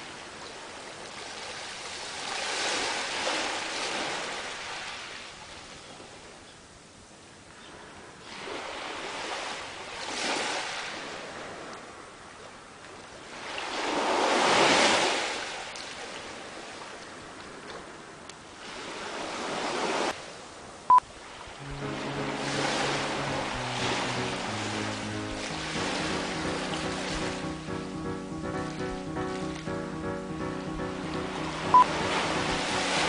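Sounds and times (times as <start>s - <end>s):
music with blocky tones: 21.6s - 33.0s
sea water rushing and splashing: 21.6s - 33.0s
short sharp beep: 31.6s - 32.1s.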